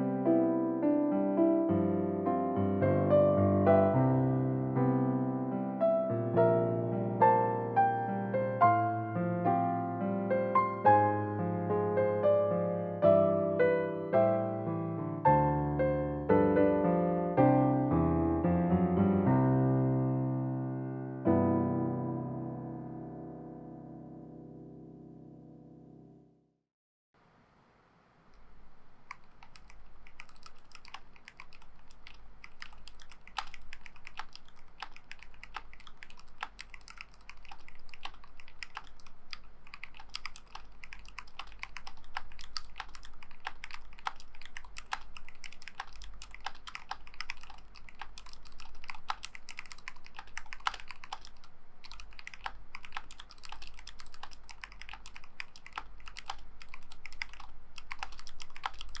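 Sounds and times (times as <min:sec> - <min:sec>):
mechanical keyboard typing: 0:29.0 - 0:59.0.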